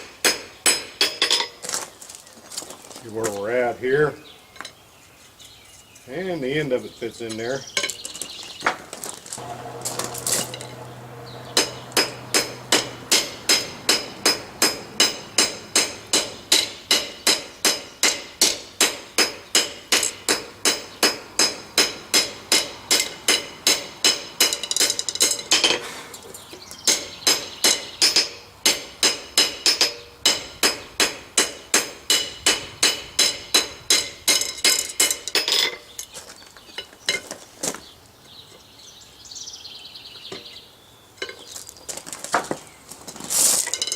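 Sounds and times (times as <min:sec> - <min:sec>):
hammer striking steel on anvil: 0:00.2 - 0:01.4, 0:09.4 - 0:25.8, 0:26.9 - 0:35.6.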